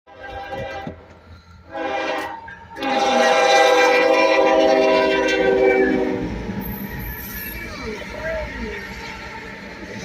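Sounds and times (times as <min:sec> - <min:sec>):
locomotive air horn blasts: 0:00.1 - 0:06.3.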